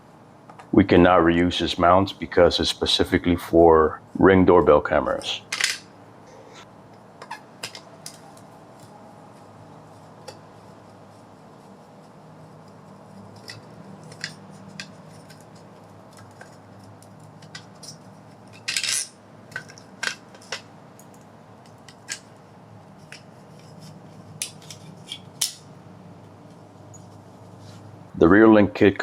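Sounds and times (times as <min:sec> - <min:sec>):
metal screws clicking and clinking: 0:17.4 - 0:22.3.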